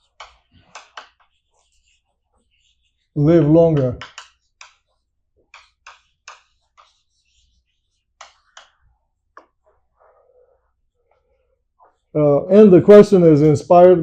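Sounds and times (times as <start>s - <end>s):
pen or chalk writing on board: 0.0s - 10.2s.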